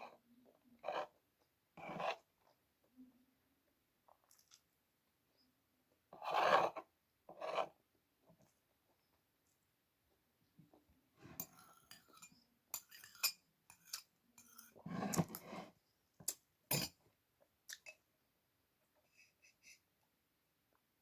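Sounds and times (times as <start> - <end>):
cutlery clinking on a plate: 11.3 - 15.5, 16.3 - 17.0.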